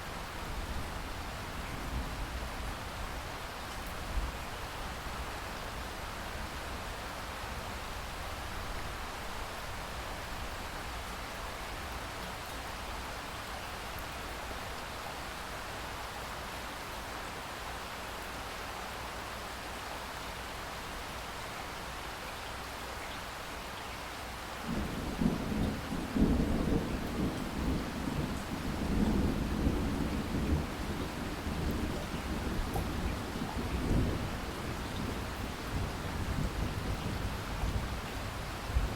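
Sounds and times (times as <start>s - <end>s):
steady rain falling: 0.0s - 38.9s
thunder rumbling: 24.7s - 38.0s.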